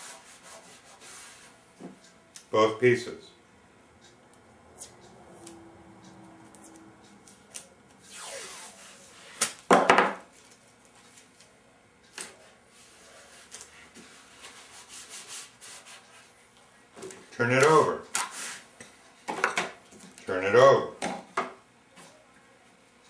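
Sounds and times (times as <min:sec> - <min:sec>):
fingers rubbing tape on wood: 0:00.0 - 0:01.5, 0:12.8 - 0:16.3.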